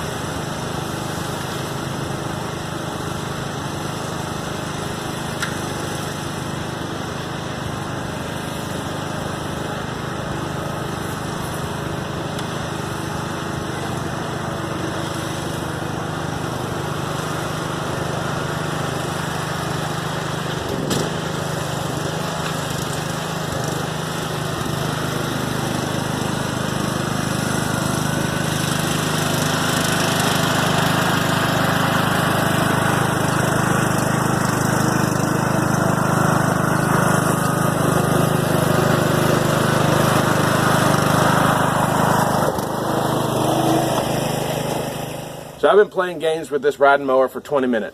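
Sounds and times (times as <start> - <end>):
riding lawn mower engine: 0.0 - 47.9.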